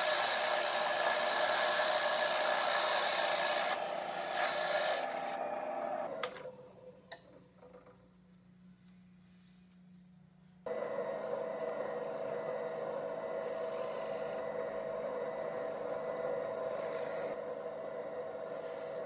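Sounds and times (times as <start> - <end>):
power tool cutting wood: 0.0 - 6.4, 10.7 - 19.0.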